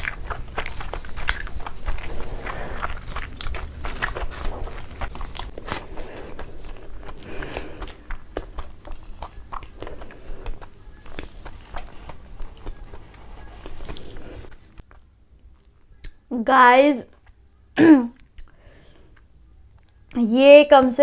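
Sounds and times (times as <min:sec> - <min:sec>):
wet mouth clicks: 0:00.0 - 0:05.4
chewing and biting food: 0:00.0 - 0:16.2.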